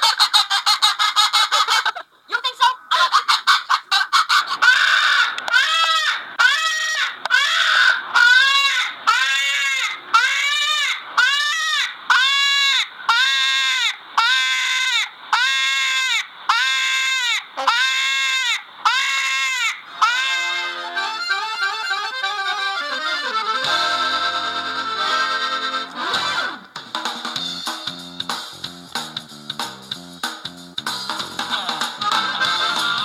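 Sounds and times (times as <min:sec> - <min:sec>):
animal crying: 0:02.9 - 0:23.5.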